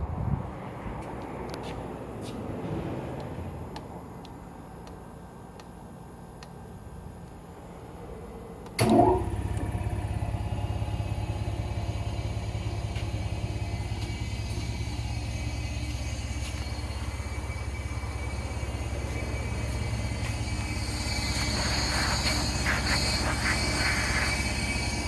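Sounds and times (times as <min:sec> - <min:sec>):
air compressor running: 0:08.8 - 0:25.0.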